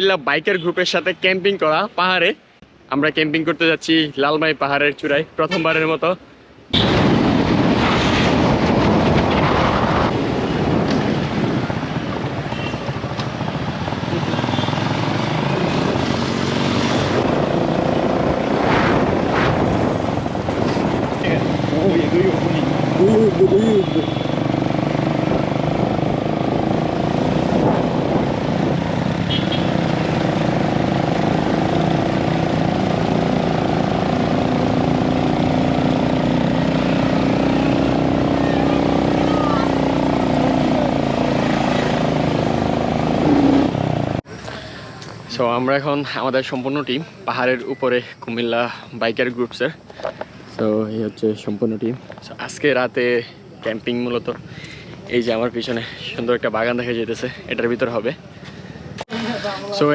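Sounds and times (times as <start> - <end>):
wind rushing on microphone: 6.8 - 14.2, 15.5 - 23.0, 25.1 - 29.3
motorcycle engine running: 11.2 - 18.4, 19.9 - 44.2.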